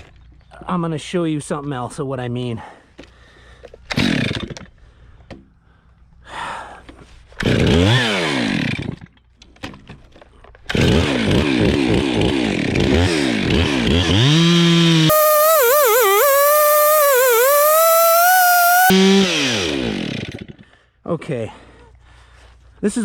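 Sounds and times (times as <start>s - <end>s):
chainsaw engine revving: 14.1s - 18.9s.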